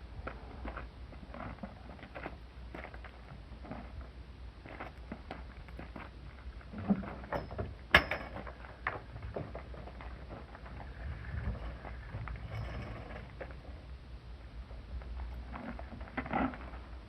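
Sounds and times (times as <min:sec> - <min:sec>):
low steady rumble: 0:00.0 - 0:17.0.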